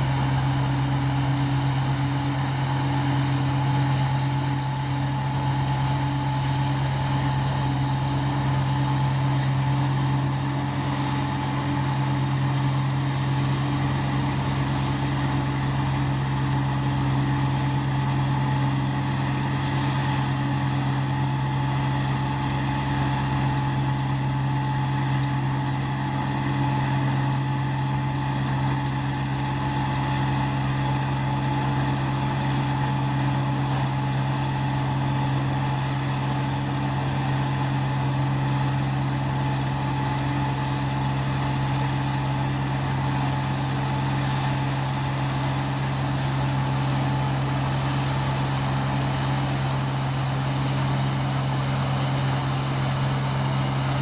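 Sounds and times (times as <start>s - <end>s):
combine harvester engine drone: 0.0s - 54.0s.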